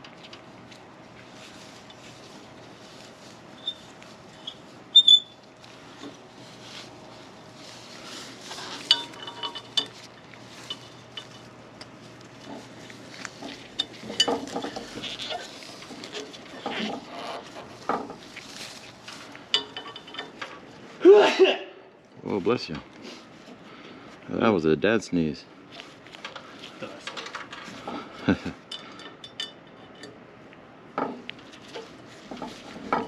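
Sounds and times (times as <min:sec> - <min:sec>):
rustling handling noise: 0:00.0 - 0:21.0, 0:25.6 - 0:30.1, 0:31.0 - 0:33.0.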